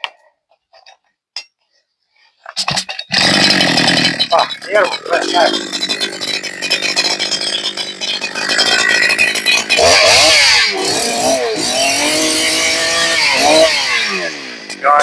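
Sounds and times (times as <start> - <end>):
chainsaw cutting a log: 3.1 - 15.0.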